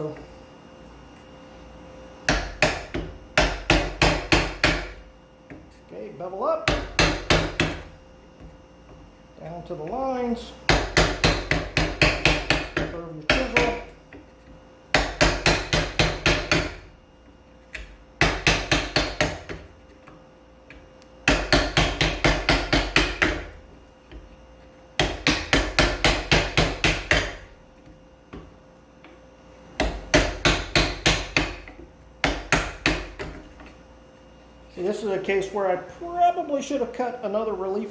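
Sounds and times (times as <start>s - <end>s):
chisel tapping into wood: 10.7s - 14.3s.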